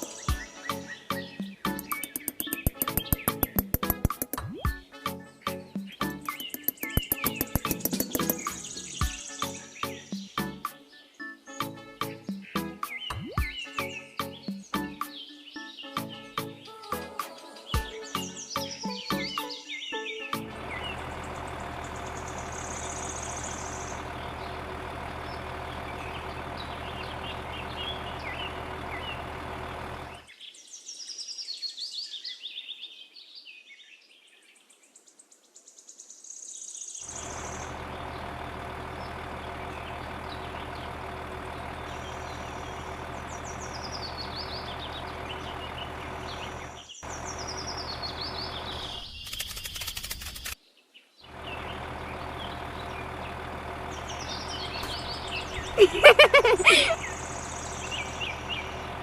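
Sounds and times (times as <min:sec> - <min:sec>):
birds chirping: 0:00.0 - 0:10.6, 0:17.7 - 0:30.4, 0:37.0 - 0:50.6, 0:51.3 - 0:59.0
low mechanical hum: 0:20.4 - 0:30.3, 0:37.1 - 0:50.6, 0:51.3 - 0:59.0.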